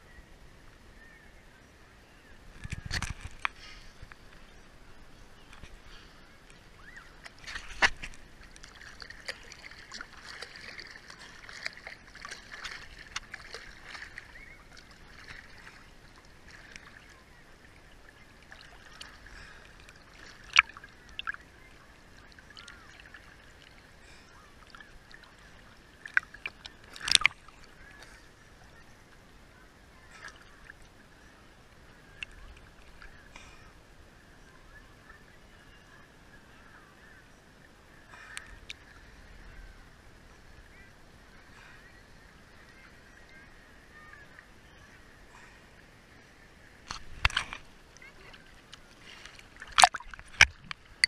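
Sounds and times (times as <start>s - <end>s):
seawater sloshing and lapping: 6.8s - 28.8s, 46.9s - 51.0s
sharp water splashes: 7.3s - 17.2s, 18.3s - 21.6s, 22.3s - 28.1s, 49.0s - 51.0s.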